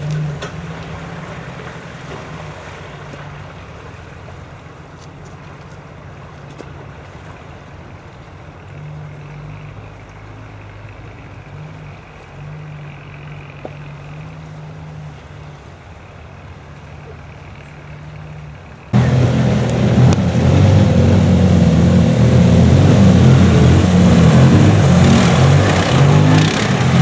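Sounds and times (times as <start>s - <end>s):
vehicle engine running: 16.3s - 27.0s.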